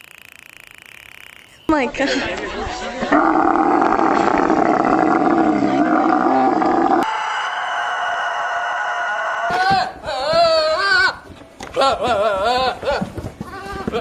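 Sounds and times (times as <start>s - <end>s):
long harsh animal call: 3.1s - 9.6s.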